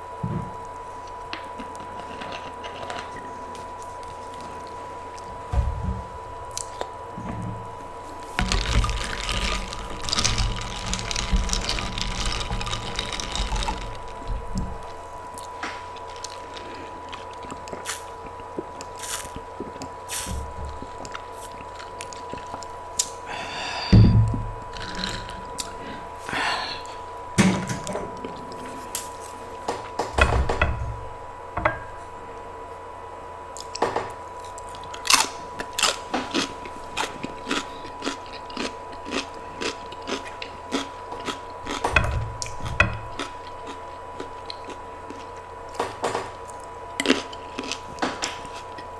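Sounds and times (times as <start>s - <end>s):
person chewing food: 1.0s - 5.3s, 8.0s - 27.1s, 34.4s - 48.9s.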